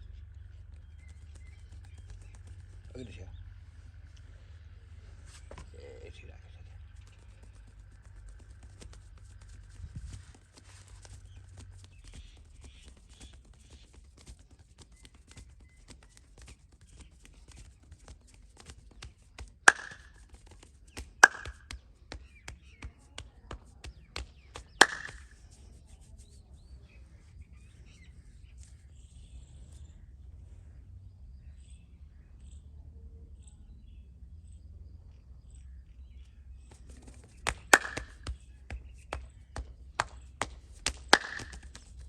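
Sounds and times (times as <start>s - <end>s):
hands tapping on body: 0.7s - 2.9s, 7.1s - 25.5s, 36.8s - 42.0s
loud sharp hand slaps: 19.7s - 20.2s, 21.2s - 21.8s, 24.2s - 25.4s, 37.5s - 38.3s, 40.9s - 41.8s.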